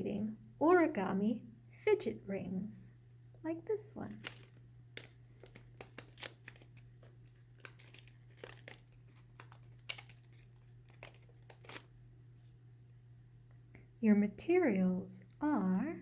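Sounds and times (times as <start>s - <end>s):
steady low hum: 0.0s - 16.0s
paper rustling and crinkling: 4.1s - 12.6s.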